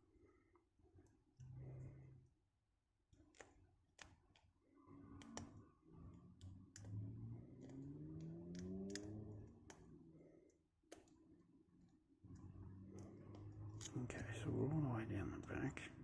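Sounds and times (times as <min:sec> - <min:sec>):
lock pick clicking in padlock: 0:08.2 - 0:09.2.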